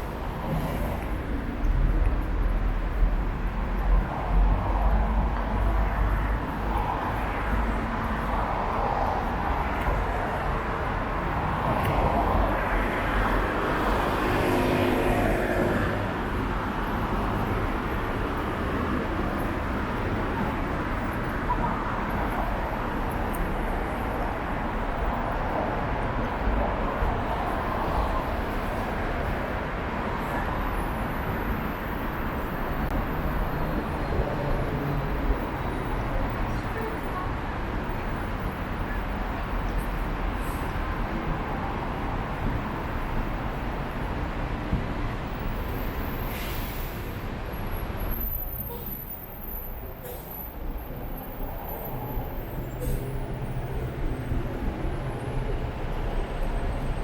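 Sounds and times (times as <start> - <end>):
cars passing on busy street: 0.0 - 57.0.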